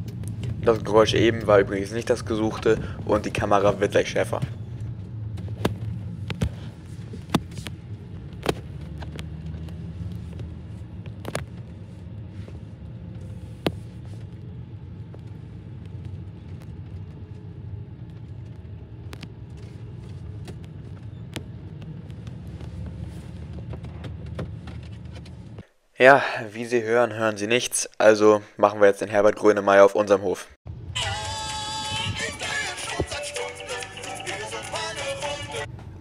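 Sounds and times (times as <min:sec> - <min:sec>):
car engine low rumble: 0:00.0 - 0:25.6.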